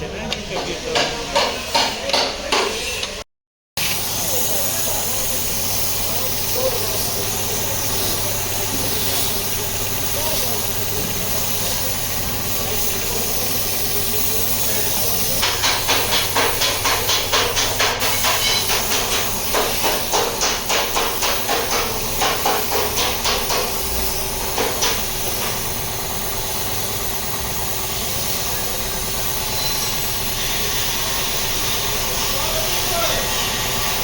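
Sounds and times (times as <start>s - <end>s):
hammer striking sheet metal: 0.5s - 3.1s, 15.4s - 25.6s.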